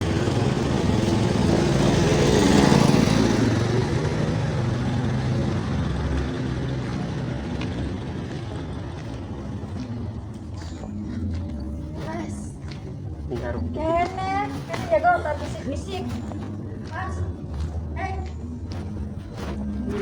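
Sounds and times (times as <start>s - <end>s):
vehicle engine running: 0.0s - 20.0s.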